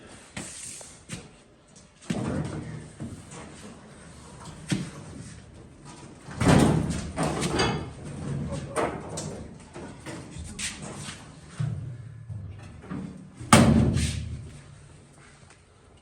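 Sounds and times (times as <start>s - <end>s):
metal knocks and clanks: 5.9s - 14.6s.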